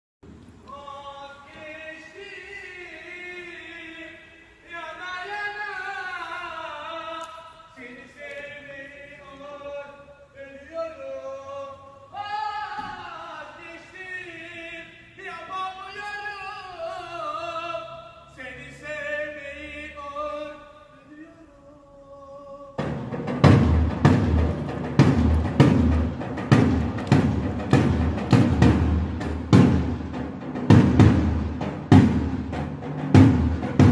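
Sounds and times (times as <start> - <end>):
man singing a chanted verse: 0.7 - 22.8.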